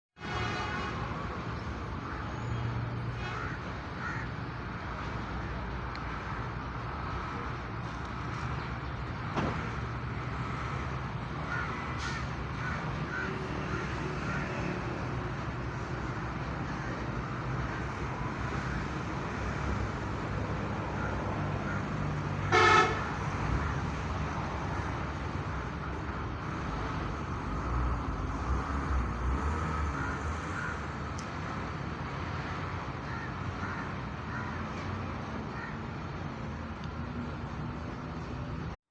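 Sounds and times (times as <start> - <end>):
vehicle horn toot: 0.2 - 1.2, 22.5 - 23.2
traffic rumble: 0.2 - 38.8
crows cawing: 3.2 - 4.7, 10.5 - 15.4, 16.6 - 19.5, 20.6 - 23.1, 29.6 - 31.2, 33.0 - 36.1.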